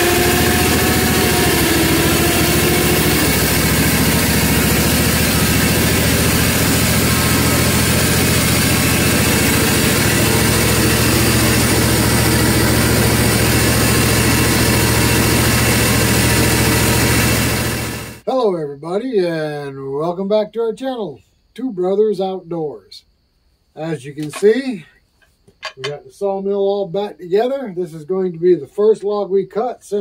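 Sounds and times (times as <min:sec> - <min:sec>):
sawmill engine running: 0:00.0 - 0:18.2.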